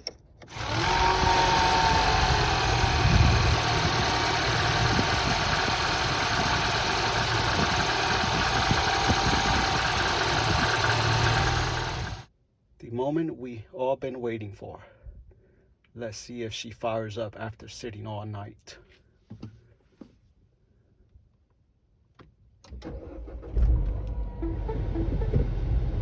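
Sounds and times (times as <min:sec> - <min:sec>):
car engine idling: 0:00.5 - 0:12.3.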